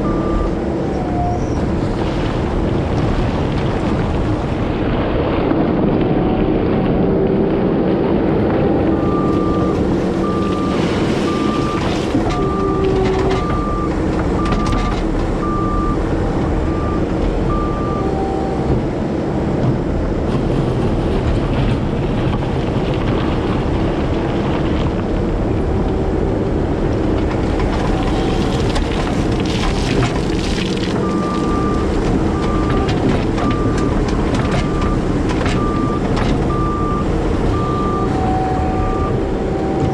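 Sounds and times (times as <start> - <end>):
backup alarm beeping: 0.0 - 1.5, 8.6 - 18.8, 30.9 - 39.9
diesel engine running: 0.0 - 39.9.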